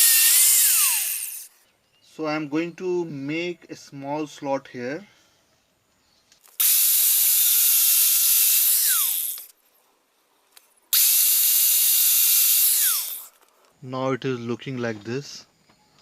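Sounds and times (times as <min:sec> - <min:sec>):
power tool cutting metal: 0:00.0 - 0:01.5, 0:06.6 - 0:09.5, 0:10.9 - 0:13.3.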